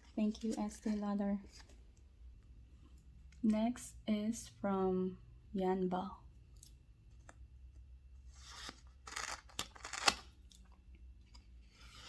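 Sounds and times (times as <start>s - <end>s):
package tearing open: 8.5s - 10.3s.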